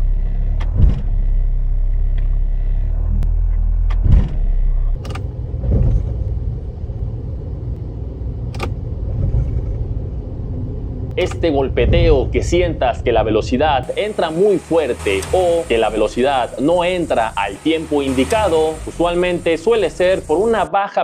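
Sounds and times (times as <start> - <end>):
car engine idling: 4.5 - 20.7
transmission gear clunk: 5.0 - 6.4, 8.4 - 9.8.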